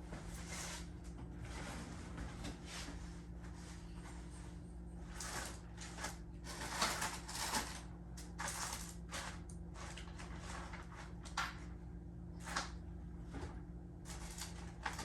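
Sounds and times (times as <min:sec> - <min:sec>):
steady low hum: 0:00.0 - 0:15.0
rummaging and scraping clatters: 0:05.1 - 0:11.2.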